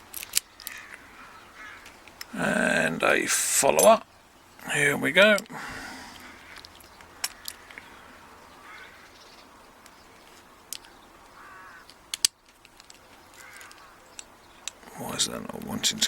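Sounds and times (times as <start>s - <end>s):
small metal clicks and taps: 9.8s - 11.0s, 11.8s - 14.9s.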